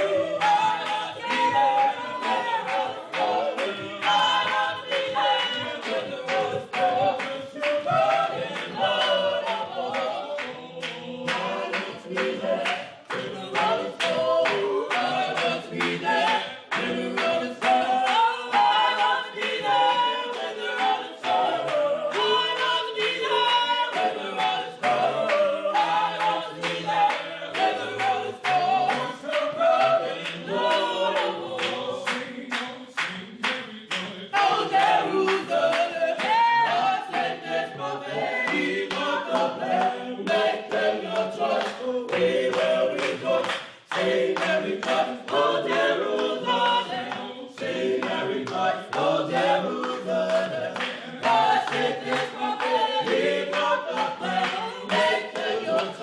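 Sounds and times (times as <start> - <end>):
choir singing a cappella: 0.0 - 56.0
hand-clapping: 0.0 - 56.0.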